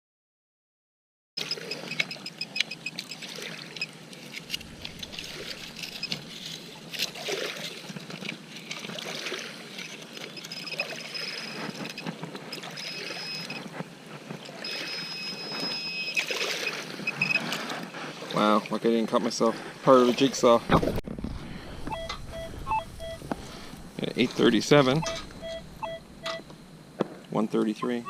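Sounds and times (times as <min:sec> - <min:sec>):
water trickling and splashing: 0:01.4 - 0:27.4
metal detector high tone: 0:04.6 - 0:06.4, 0:12.8 - 0:13.6, 0:14.6 - 0:16.3, 0:21.8 - 0:26.7, 0:27.7 - 0:28.0.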